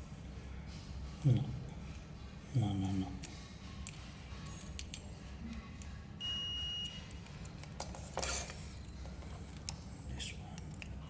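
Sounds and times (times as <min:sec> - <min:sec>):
multimeter continuity beep: 0:06.2 - 0:07.0.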